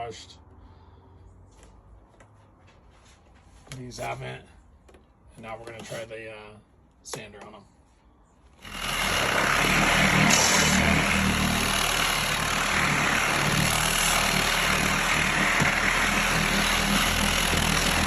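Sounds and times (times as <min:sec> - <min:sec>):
sander motor hum: 0:08.6 - 0:18.0.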